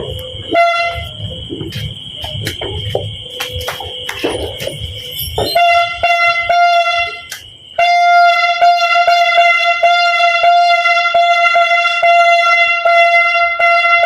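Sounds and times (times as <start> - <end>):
noisemaker horn blast: 0.0 - 1.3, 4.9 - 14.0.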